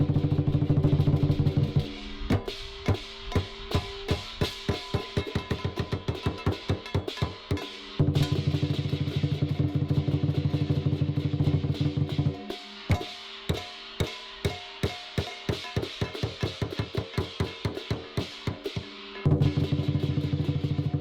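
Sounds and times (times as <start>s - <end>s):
big drum roll and strikes: 0.0s - 21.0s
ringing percussion tones: 2.3s - 9.5s, 12.7s - 18.8s.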